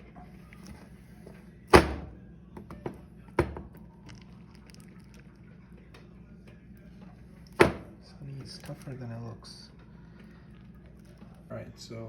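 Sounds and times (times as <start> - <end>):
potato masher thudding: 7.6 - 8.0.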